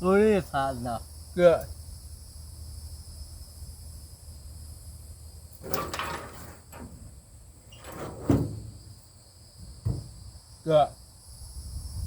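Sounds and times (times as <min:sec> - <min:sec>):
high-pitched insect chirring: 0:00.0 - 0:05.6, 0:08.8 - 0:12.0
handling sounds at a grill: 0:05.5 - 0:07.1, 0:07.7 - 0:09.0.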